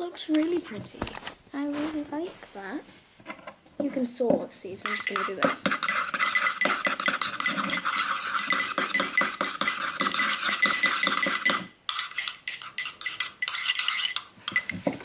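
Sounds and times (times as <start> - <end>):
tool stirring slime in a bowl: 4.8 - 14.9.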